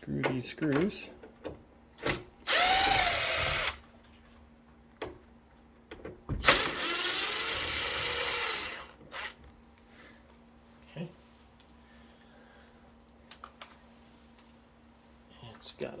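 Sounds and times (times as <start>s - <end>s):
power drill whining: 2.0s - 3.8s, 6.4s - 9.4s.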